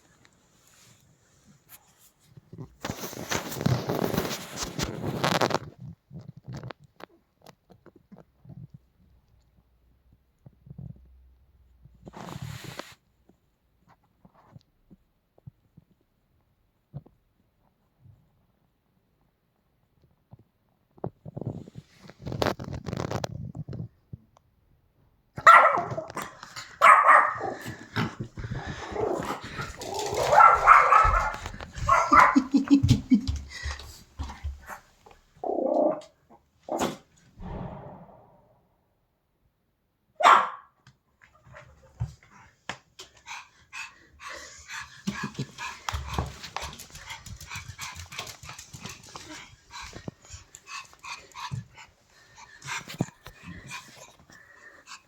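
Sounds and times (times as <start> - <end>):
dog barking: 25.4 - 27.6, 29.9 - 32.6, 40.2 - 40.7
dog panting: 27.6 - 34.9, 43.0 - 55.0
sudden loud sound: 37.4 - 38.9.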